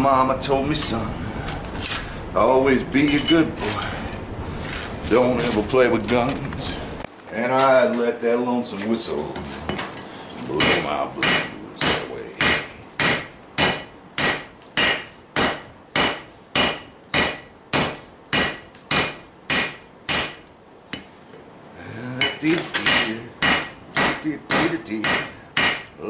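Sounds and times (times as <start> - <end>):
hammer striking anvil: 10.6 - 20.4, 22.2 - 25.9.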